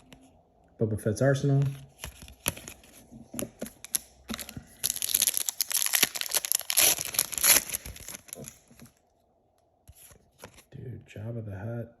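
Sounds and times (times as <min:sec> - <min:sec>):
foil wrapper crinkling and tearing: 0:03.9 - 0:08.7.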